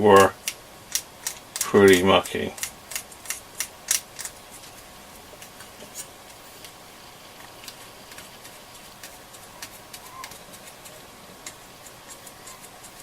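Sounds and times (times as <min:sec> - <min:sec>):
pencil scratching metal pins: 0:08.1 - 0:13.0.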